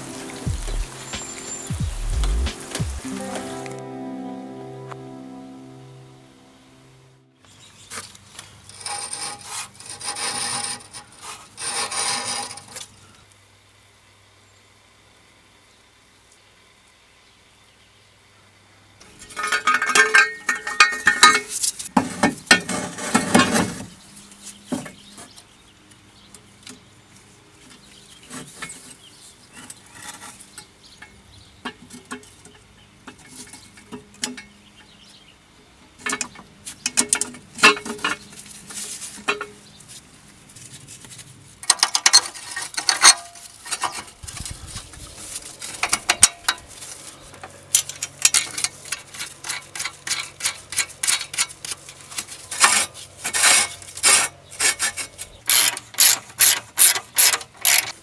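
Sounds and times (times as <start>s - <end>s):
metal hand tools clinking: 49.4s - 51.7s.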